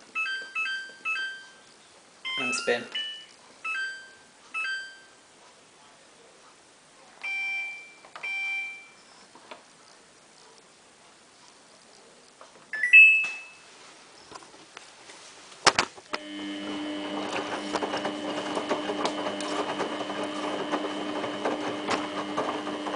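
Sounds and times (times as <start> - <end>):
washing machine beep: 0.2 - 1.6, 2.2 - 5.2, 7.2 - 9.1, 12.7 - 13.7
washing machine motor humming: 16.1 - 22.9.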